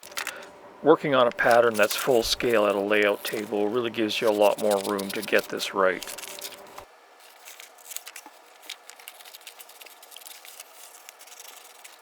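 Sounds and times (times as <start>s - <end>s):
pencil scratching on paper: 1.4s - 6.4s.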